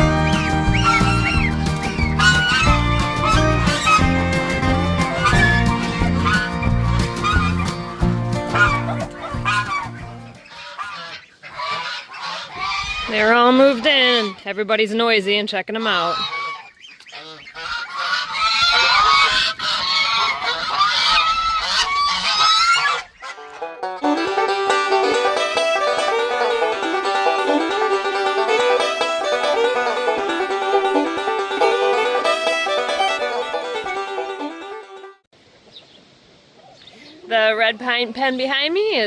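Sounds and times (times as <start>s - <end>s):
banjo music: 0.0s - 10.4s, 23.3s - 35.3s
goslings and ducks calling: 0.0s - 34.0s.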